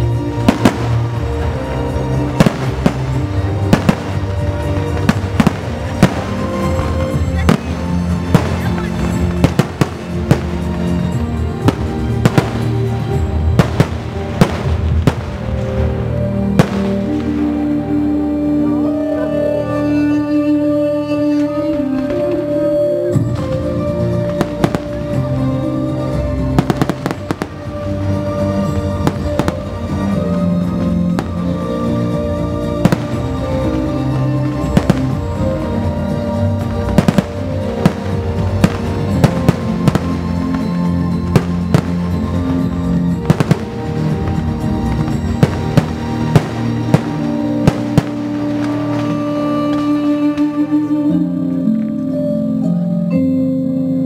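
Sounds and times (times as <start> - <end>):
music playing: 0.0 - 54.0
fireworks bangs: 0.1 - 18.0, 23.1 - 25.4, 26.1 - 50.6.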